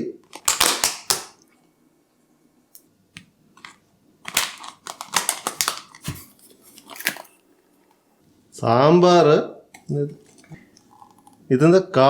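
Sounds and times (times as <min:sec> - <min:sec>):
packaging crinkling and rustling: 0:03.6 - 0:07.5.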